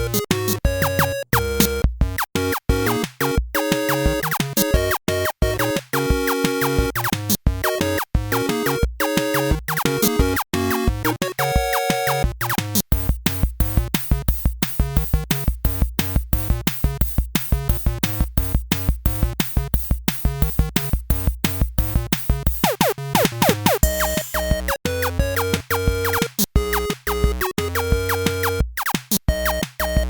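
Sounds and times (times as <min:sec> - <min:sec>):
drum machine beat: 0:00.0 - 0:10.4, 0:11.5 - 0:30.0
synthesizer notes: 0:22.6 - 0:24.5.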